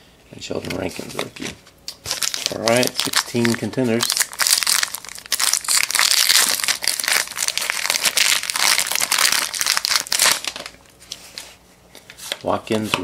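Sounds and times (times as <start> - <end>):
foil wrapper tearing and crinkling: 2.0 - 10.8.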